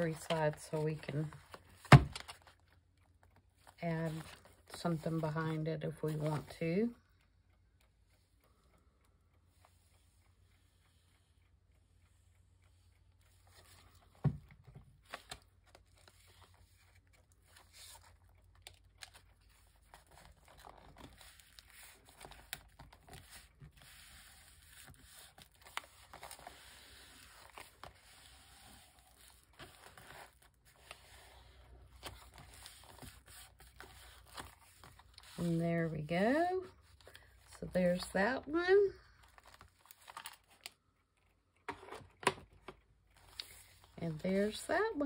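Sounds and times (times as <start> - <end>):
paper rustling: 0.0 - 2.6, 3.6 - 4.6, 15.0 - 35.6.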